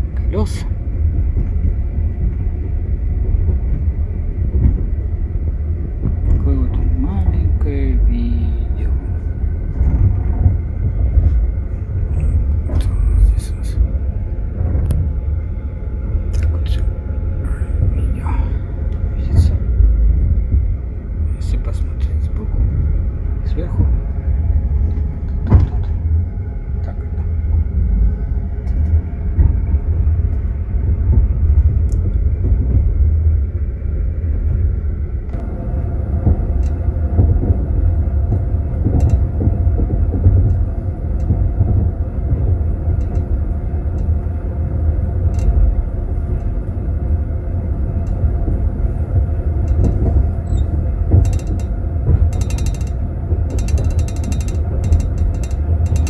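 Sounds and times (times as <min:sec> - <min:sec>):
train wheels clattering on rails: 0:00.0 - 0:56.0
small clicks and rattles: 0:35.3 - 0:46.9, 0:47.7 - 0:56.0.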